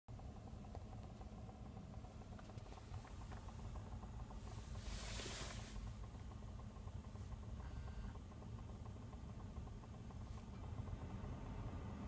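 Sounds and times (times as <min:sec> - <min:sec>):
heater blower fan humming: 0:00.1 - 0:12.0
rapid ticking knock: 0:00.4 - 0:04.5
brief hiss: 0:04.8 - 0:05.8.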